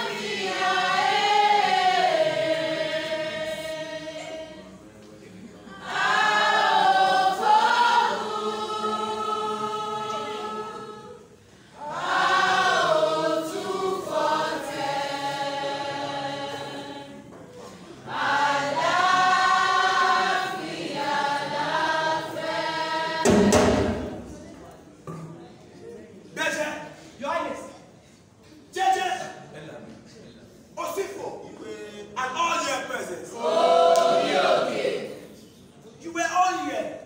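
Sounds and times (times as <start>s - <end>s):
group singing in chorus: 0.0s - 4.9s, 5.6s - 24.3s, 33.2s - 35.5s
sudden thump: 23.2s - 24.4s.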